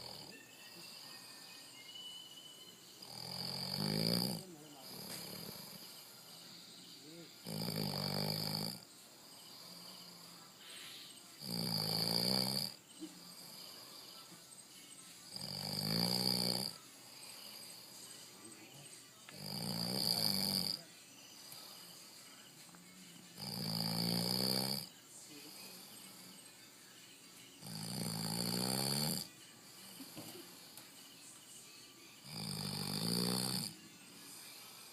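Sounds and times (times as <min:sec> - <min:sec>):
person snoring: 0:00.0 - 0:01.3, 0:03.0 - 0:14.3, 0:15.2 - 0:18.3, 0:19.3 - 0:22.4, 0:23.4 - 0:26.5, 0:27.6 - 0:30.8, 0:32.2 - 0:34.9.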